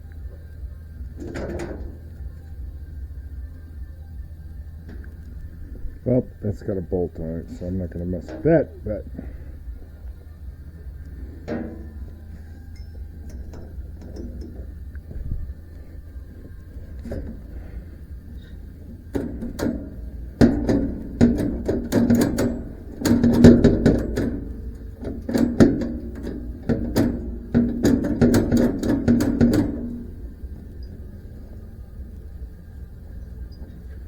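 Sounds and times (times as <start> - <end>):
metallic clicking and clanking: 1.0 - 2.6, 4.8 - 34.0.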